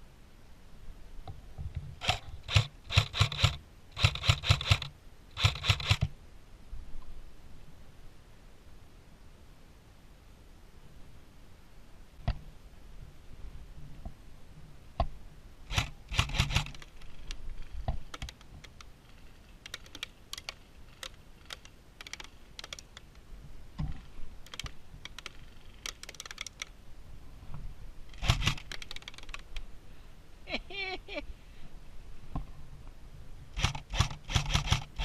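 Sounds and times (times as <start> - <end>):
airsoft gun bursts: 2.0 - 6.1, 15.7 - 17.2, 28.1 - 29.4, 33.6 - 35.0.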